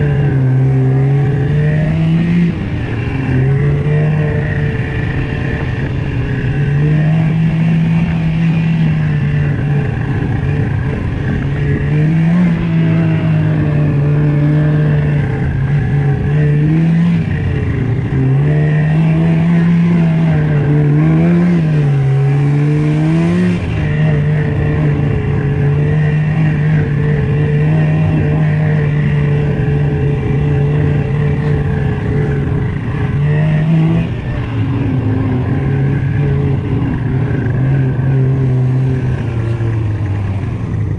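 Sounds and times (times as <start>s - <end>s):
snowmobile engine running: 0.0s - 40.9s
wind and track noise: 0.0s - 40.9s.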